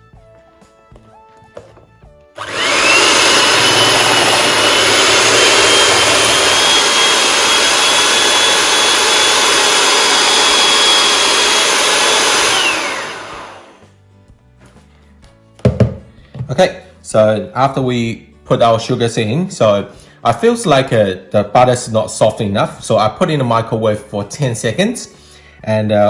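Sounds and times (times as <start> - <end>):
electric mixer whining: 2.4 - 13.9.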